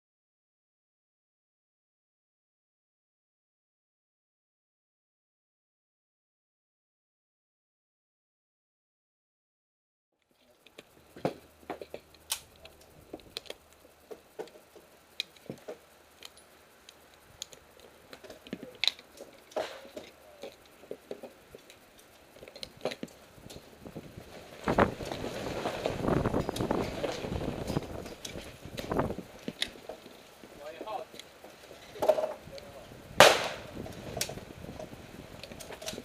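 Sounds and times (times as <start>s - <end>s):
rustling and shuffling: 10.3s - 33.0s.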